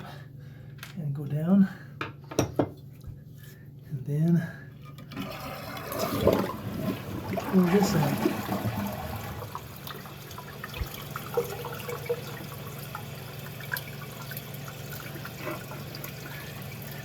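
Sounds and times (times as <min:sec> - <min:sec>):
water trickling and dripping: 0:09.4 - 0:17.0.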